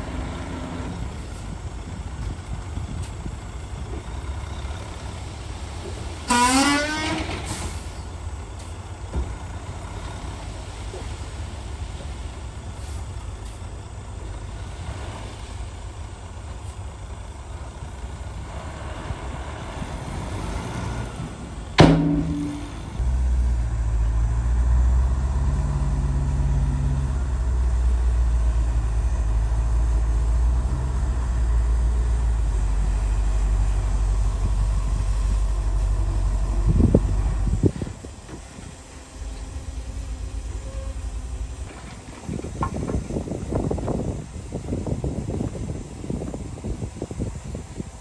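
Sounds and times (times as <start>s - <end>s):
heavy diesel machinery running: 0.0s - 48.0s
sharp metallic bang: 21.8s - 23.0s.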